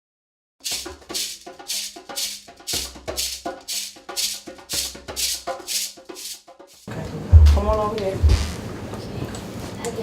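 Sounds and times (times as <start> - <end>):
background music with shaker: 0.6 - 8.4.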